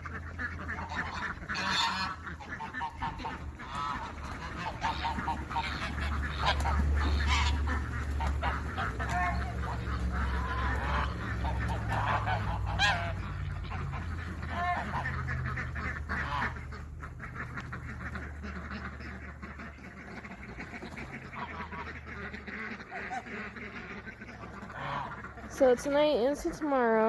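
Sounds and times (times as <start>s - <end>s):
poultry honking calls: 0.0s - 27.0s.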